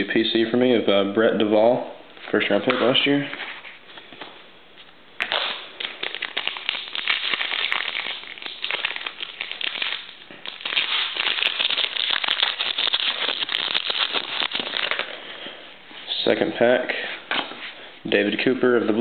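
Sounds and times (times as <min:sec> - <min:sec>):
card pack wrapper tearing: 0:05.2 - 0:15.2.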